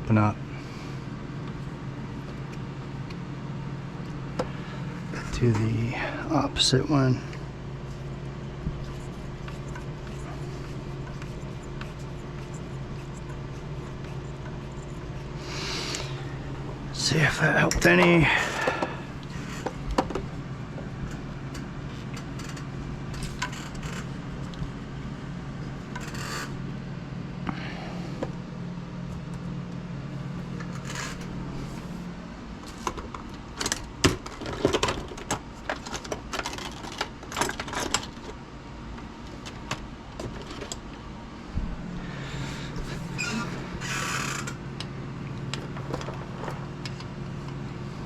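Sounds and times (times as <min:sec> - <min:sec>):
steady low hum: 0:00.0 - 0:48.0.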